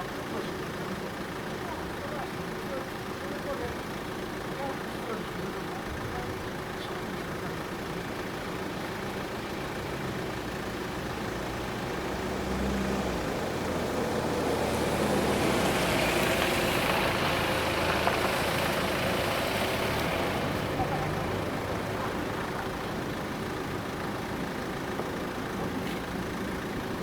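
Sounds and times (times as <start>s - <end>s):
vehicle engine passing: 9.9s - 27.0s.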